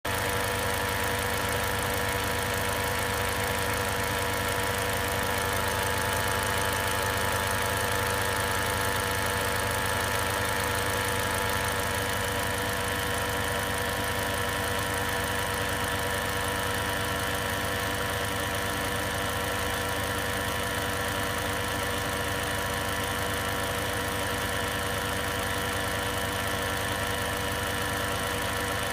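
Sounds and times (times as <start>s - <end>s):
car engine idling: 0.0s - 28.9s.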